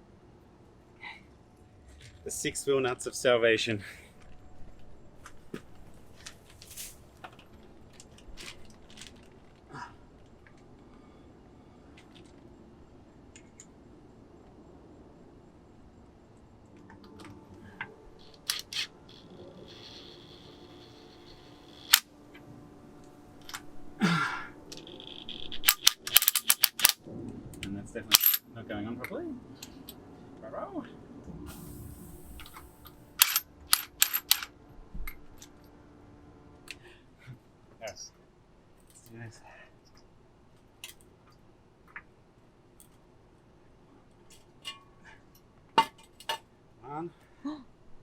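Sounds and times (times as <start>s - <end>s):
brief high whine: 31.2s - 33.2s.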